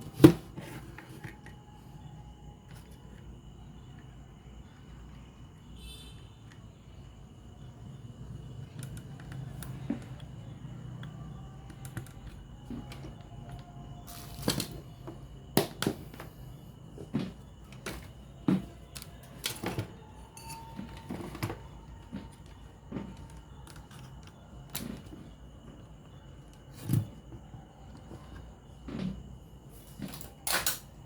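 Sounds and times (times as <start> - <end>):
clicks and knocks of tools: 17.2 - 25.2, 29.8 - 31.0.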